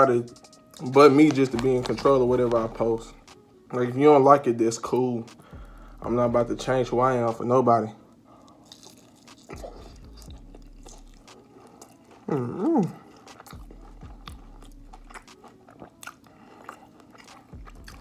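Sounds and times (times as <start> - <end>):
person chewing food: 0.7 - 3.3, 8.3 - 18.0
wet mouth clicks: 8.5 - 18.0
person humming mmm: 8.6 - 18.0.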